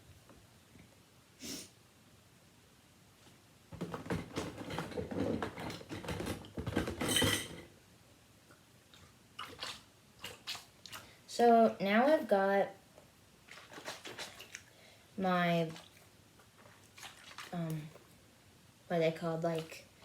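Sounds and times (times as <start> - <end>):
plastic toys clattering: 3.8 - 7.6.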